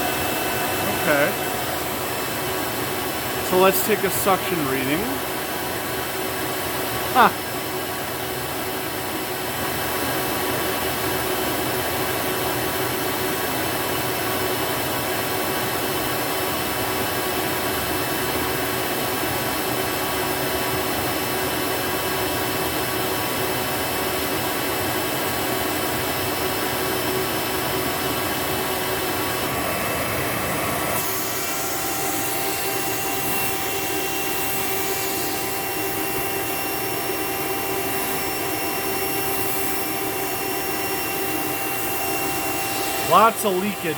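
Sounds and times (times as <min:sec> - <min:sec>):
vacuum cleaner motor running: 0:00.0 - 0:43.9
steady whine: 0:42.2 - 0:43.9.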